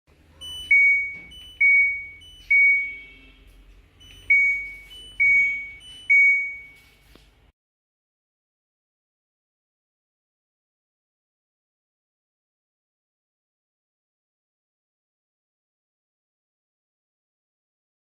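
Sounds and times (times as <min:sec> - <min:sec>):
electronic two-note beeps: 0:00.4 - 0:03.4, 0:04.0 - 0:07.0.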